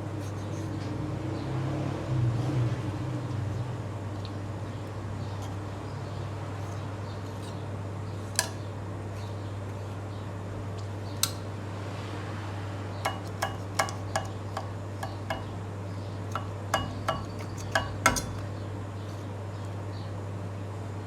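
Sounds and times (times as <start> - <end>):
steady low hum: 0.0 - 21.0
utensils clinking against dishes: 8.3 - 9.3, 13.1 - 15.6, 16.3 - 18.6.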